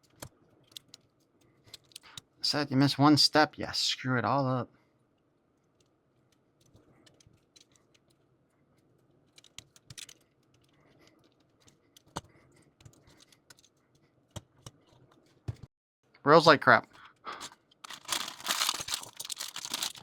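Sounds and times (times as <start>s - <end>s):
plastic parts clicking: 0.0s - 2.2s, 5.8s - 8.2s, 9.2s - 15.1s, 17.4s - 20.0s.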